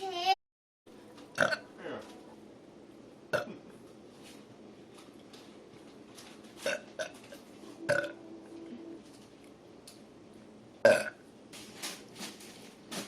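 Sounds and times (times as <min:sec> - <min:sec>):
woman burping: 0:03.3 - 0:03.7.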